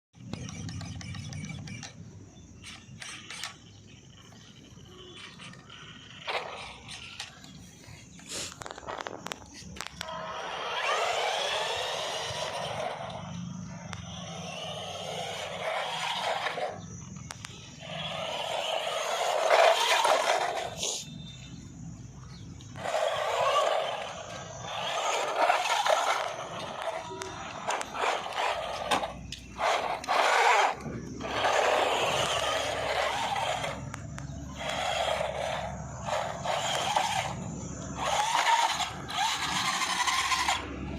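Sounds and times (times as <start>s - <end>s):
sharp clicks: 0.2s - 10.2s, 16.0s - 18.2s, 23.8s - 35.0s
rc car electric motor whining: 0.2s - 40.9s.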